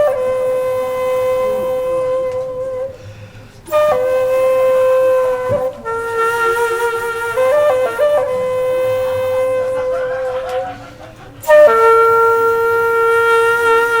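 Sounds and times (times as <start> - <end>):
wind instrument long notes: 0.0 - 14.0.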